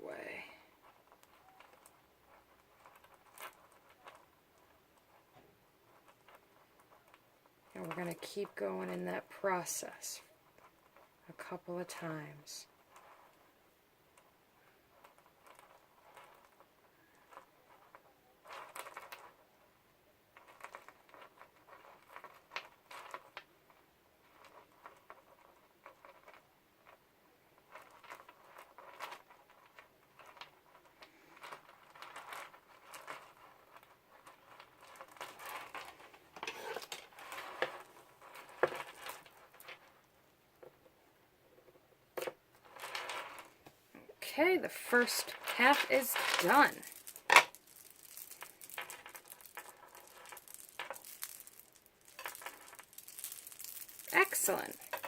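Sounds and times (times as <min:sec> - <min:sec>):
beads clicking together: 0:44.9 - 0:55.0.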